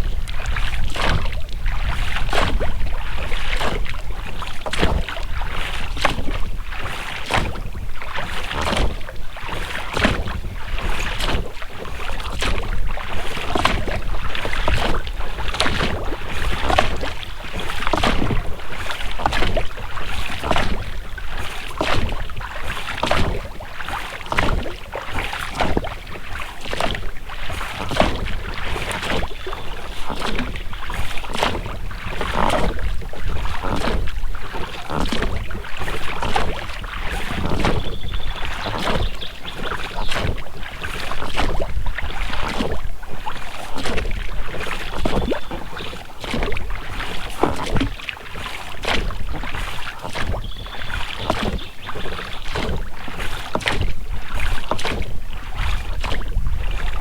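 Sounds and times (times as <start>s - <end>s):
oars splashing in water: 0.0s - 57.0s
rubber rowlocks squeaking: 37.1s - 40.4s, 50.0s - 52.8s.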